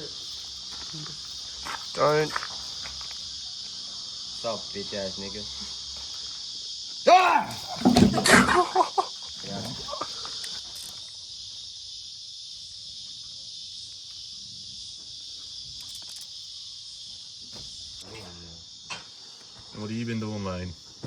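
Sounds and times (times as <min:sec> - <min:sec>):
insect chorus drone: 0:00.0 - 0:21.0
man shouting: 0:07.0 - 0:07.8.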